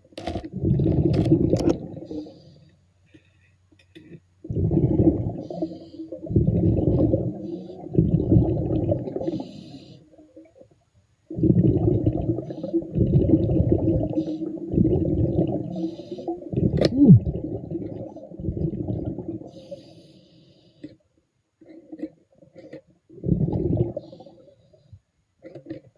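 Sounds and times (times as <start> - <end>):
underwater exhaled air bubbling: 0.4 - 2.4, 4.4 - 10.7, 11.3 - 20.0, 23.1 - 24.6.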